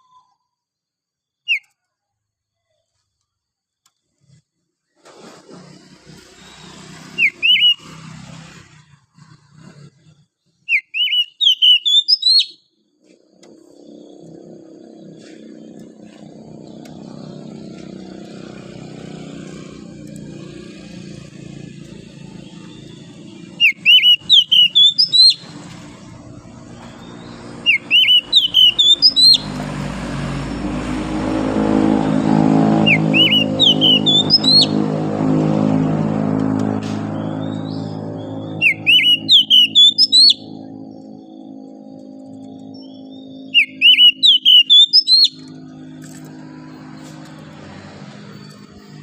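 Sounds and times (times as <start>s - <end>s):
low engine hum: 5.0s - 10.3s, 13.1s - 49.0s
passing vehicle: 5.0s - 10.3s, 13.0s - 49.0s
bird singing whistled notes: 6.3s - 8.0s, 10.7s - 12.7s, 20.5s - 29.6s, 32.8s - 34.8s, 37.0s - 45.6s.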